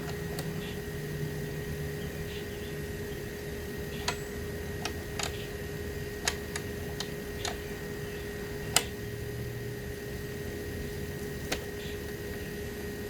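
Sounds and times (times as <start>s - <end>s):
faint steady hum: 0.0s - 13.0s.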